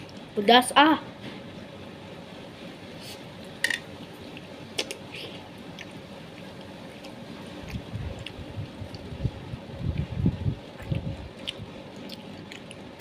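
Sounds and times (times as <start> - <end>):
chewing and wet mouth smacks: 5.7 - 9.2, 9.9 - 13.0.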